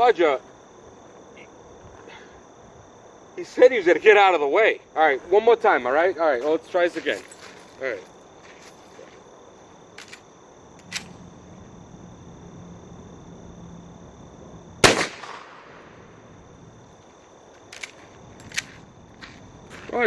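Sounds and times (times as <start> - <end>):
rifle shot with echo: 14.8 - 16.0.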